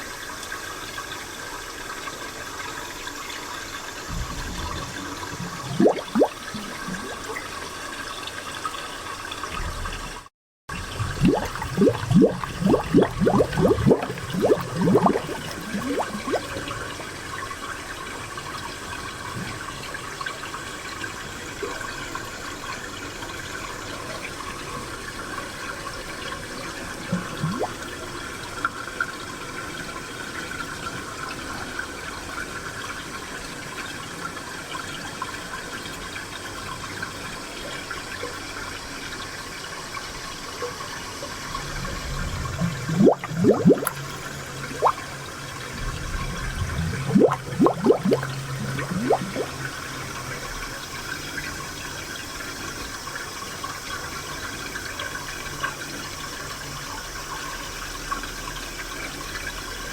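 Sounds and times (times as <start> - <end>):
spring water running: 1.8 - 23.1, 27.0 - 28.1, 40.1 - 54.5
gurgling bubbling plops: 4.0 - 7.7, 9.5 - 17.1, 27.0 - 28.0, 41.5 - 50.9.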